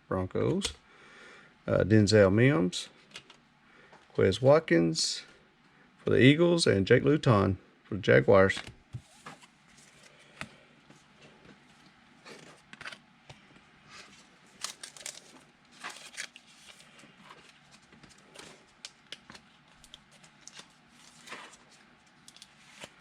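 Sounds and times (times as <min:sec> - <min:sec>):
packaging rustling and crinkling: 0:14.0 - 0:23.0.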